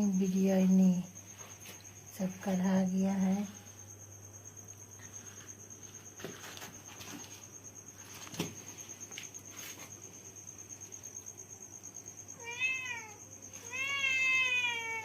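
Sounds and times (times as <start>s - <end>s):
cat meowing: 12.4s - 15.0s.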